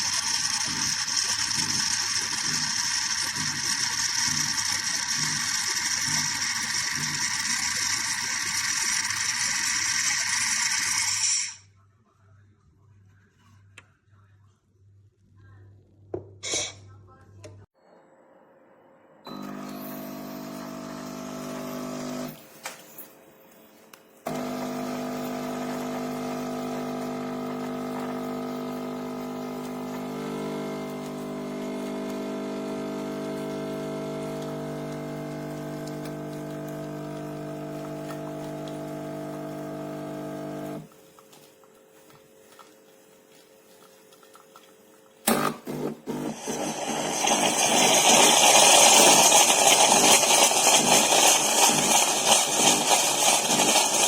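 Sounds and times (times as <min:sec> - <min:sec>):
espresso machine pump humming: 0:00.0 - 0:11.4, 0:19.3 - 0:22.4, 0:24.3 - 0:40.9, 0:45.3 - 0:54.0.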